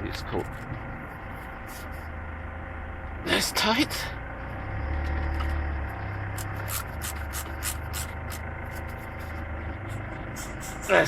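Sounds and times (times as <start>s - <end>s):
hand tools clicking and scraping: 6.3s - 11.0s.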